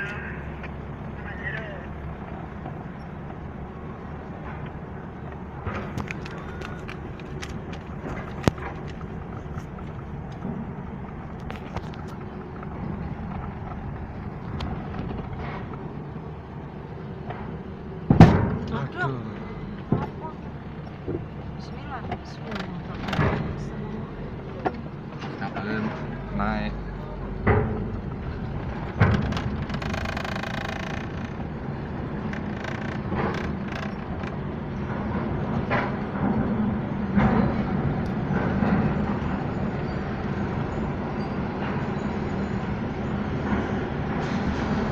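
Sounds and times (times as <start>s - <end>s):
vehicle engines rumbling: 0.0s - 44.9s
clattering: 27.2s - 39.5s
faint clicks and knocks: 27.4s - 36.6s.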